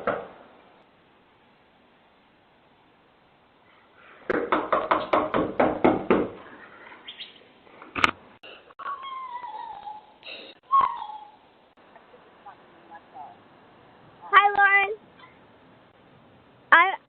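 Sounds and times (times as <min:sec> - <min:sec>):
rapid pounding on door: 0:04.3 - 0:06.4.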